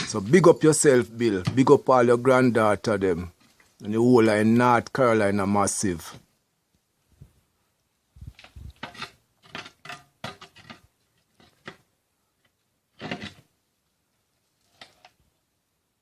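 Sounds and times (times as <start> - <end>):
metal tools scraping on rock: 8.8 - 11.8, 13.0 - 13.5.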